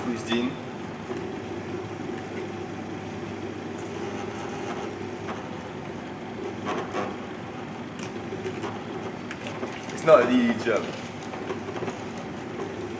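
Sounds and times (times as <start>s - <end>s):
juicer crushing vegetables: 6.4s - 12.9s.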